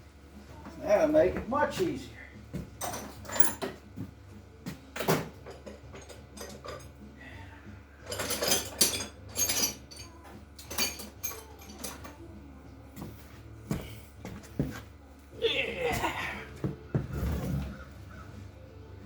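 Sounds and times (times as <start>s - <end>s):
steel tools clinking on engine: 2.8s - 3.8s, 5.4s - 7.0s, 8.0s - 12.2s.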